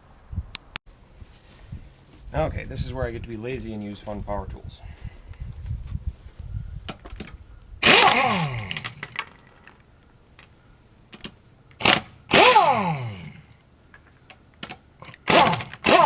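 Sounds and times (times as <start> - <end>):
air impact wrench spinning: 7.8 - 9.0, 11.8 - 13.4, 15.2 - 16.0.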